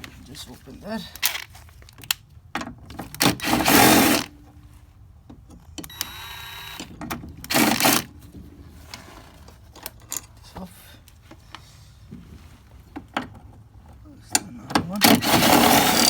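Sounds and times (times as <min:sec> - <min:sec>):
small power tool whining: 0:03.4 - 0:04.3, 0:05.9 - 0:08.1, 0:15.2 - 0:16.0.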